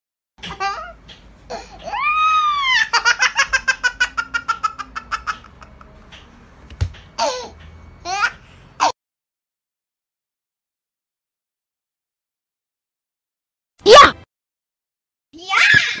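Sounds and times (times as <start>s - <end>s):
child giggling: 1.8s - 5.8s
child squealing: 1.9s - 2.9s, 15.4s - 16.0s.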